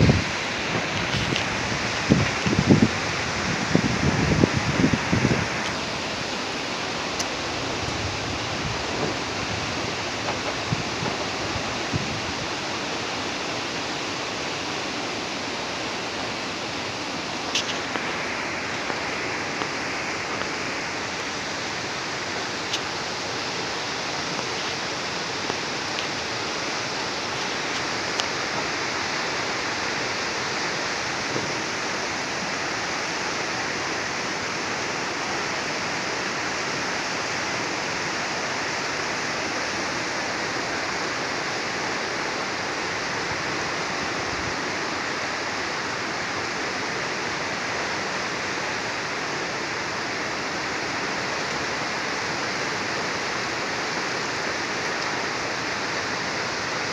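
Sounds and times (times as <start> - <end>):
storm rushing noise: 0.0 - 13.6.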